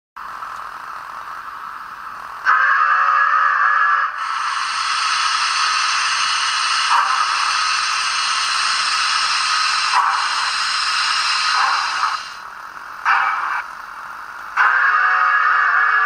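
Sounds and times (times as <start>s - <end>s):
steam whistle blast: 2.5s - 12.4s, 14.6s - 16.0s
hiss of escaping steam: 2.5s - 12.5s.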